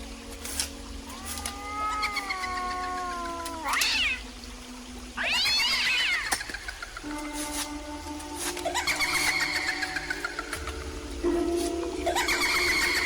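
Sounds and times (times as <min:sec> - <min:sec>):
background music: 0:00.0 - 0:13.0
animal meow-like calls: 0:01.0 - 0:04.3, 0:05.2 - 0:06.4.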